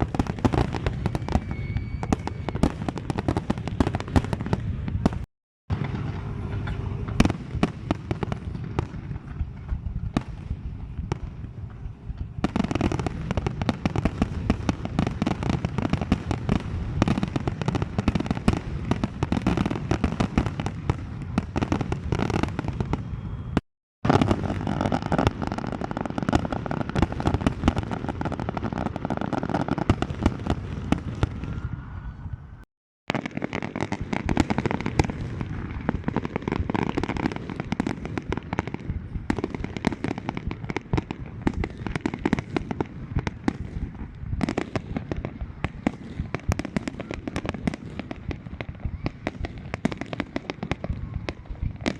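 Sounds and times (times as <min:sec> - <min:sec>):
fireworks bangs and crackling: 0:00.0 - 0:32.4, 0:33.1 - 0:51.9.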